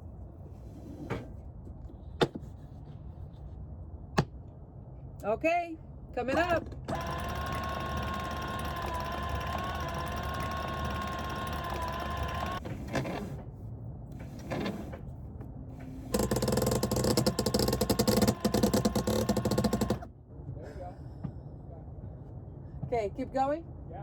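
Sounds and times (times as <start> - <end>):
winch ratchet clicking: 6.4 - 12.6, 16.0 - 20.1
winch humming: 6.4 - 13.3, 15.8 - 20.1.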